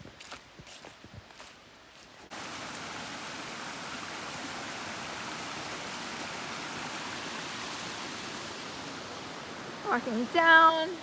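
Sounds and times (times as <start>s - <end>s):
stream water rushing: 0.2s - 11.0s.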